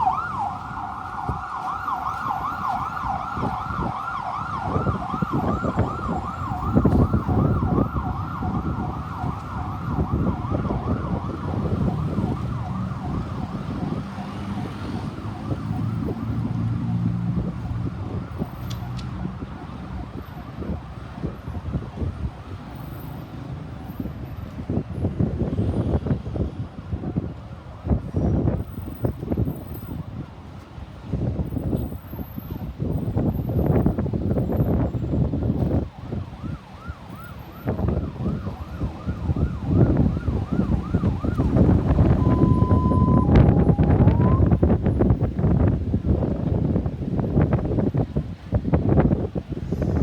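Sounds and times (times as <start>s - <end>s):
ambulance siren yelping: 0.0s - 23.3s, 33.1s - 45.1s
low rumble of road traffic: 0.0s - 50.0s.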